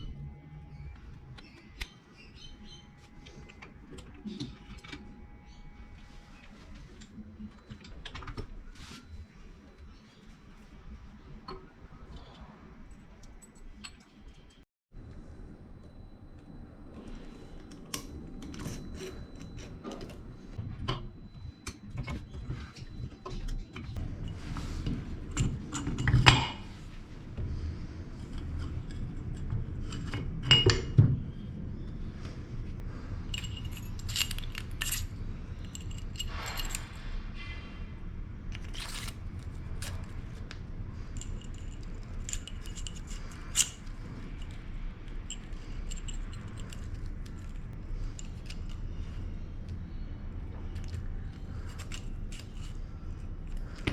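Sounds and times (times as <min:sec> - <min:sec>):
metal tools clinking on workbench: 0:33.3 - 0:37.0, 0:41.1 - 0:49.2.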